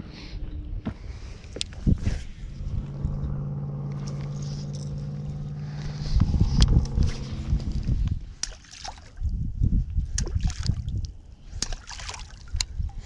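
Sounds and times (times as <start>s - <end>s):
low bumps: 0.0s - 8.6s
boat motor humming: 0.4s - 8.4s
water sloshing: 6.8s - 9.4s, 10.0s - 13.0s.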